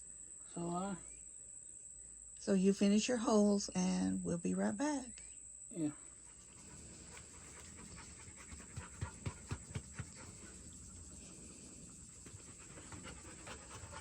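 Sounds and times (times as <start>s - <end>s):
dog panting: 6.1s - 14.0s.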